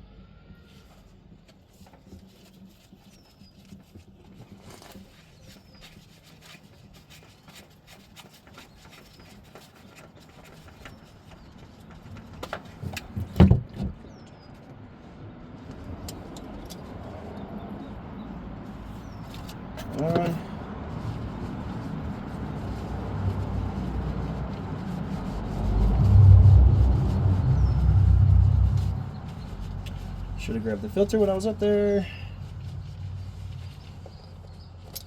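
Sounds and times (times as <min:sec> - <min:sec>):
steady rushing noise: 0:21.0 - 0:34.8.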